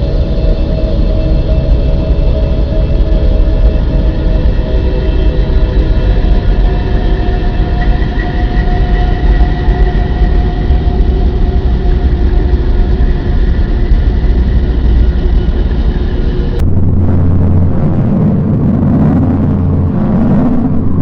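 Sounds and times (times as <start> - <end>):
faint steady tones: 0.0 - 21.0
low electronic drone: 0.0 - 21.0.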